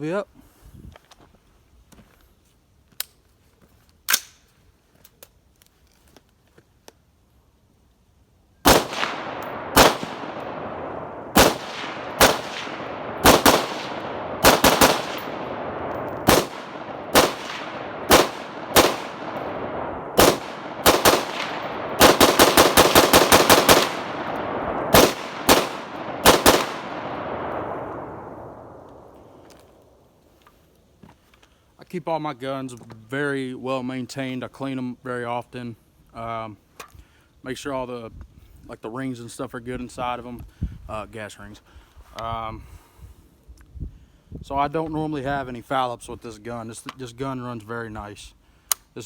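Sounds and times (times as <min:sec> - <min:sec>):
rifle shots echoing: 0:08.6 - 0:29.4.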